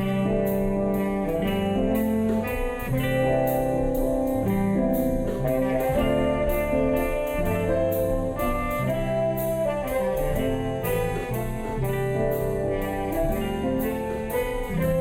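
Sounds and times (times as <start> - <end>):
instrumental music with beat: 0.0 - 15.0.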